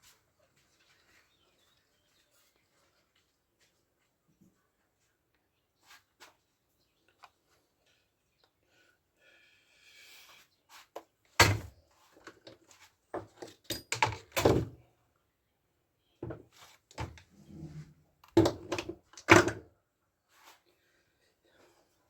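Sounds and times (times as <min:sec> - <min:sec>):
knocks and clunks of hard parts: 0:13.2 - 0:14.8.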